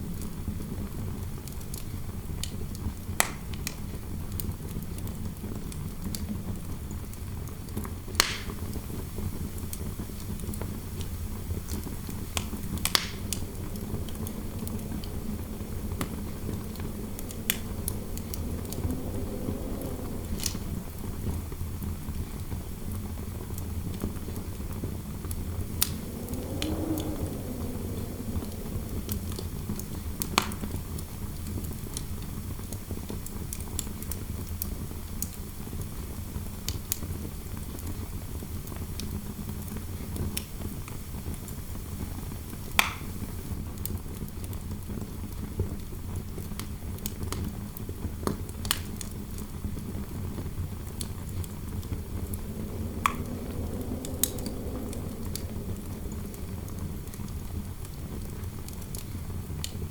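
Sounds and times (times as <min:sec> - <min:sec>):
fire crackling and popping: 0:02.4 - 0:35.4, 0:45.4 - 0:59.9
wind howling: 0:08.5 - 0:32.0, 0:48.9 - 0:59.9
low steady rumble: 0:10.6 - 0:31.8, 0:49.5 - 0:59.9.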